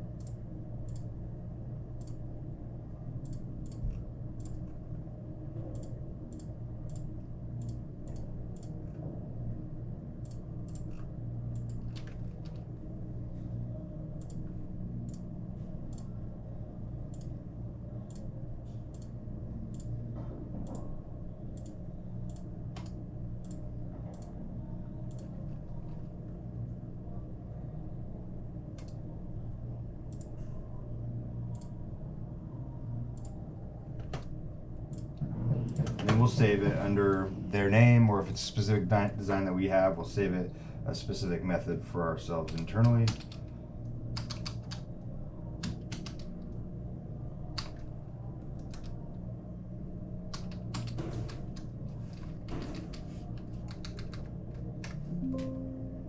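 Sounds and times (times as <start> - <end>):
steady low hum: 0.0 - 56.0
computer mouse clicks: 0.2 - 1.1, 2.0 - 2.2, 3.2 - 4.8, 5.7 - 8.8, 10.2 - 12.6, 14.2 - 14.5, 17.1 - 17.4, 18.9 - 19.1, 19.7 - 20.0, 21.5 - 24.3, 25.1 - 25.4, 28.7 - 29.0, 30.1 - 30.3, 44.2 - 44.9, 45.6 - 46.3, 47.6 - 47.9, 48.6 - 49.0, 50.3 - 55.0
keyboard typing: 44.2 - 44.8, 45.6 - 46.3, 50.3 - 55.8.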